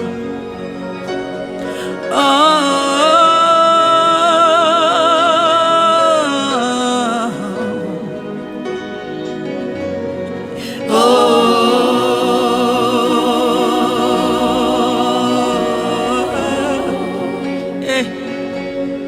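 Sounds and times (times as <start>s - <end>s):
sustained instrumental backing: 0.0s - 19.0s
person singing long vibrato note: 10.8s - 18.6s.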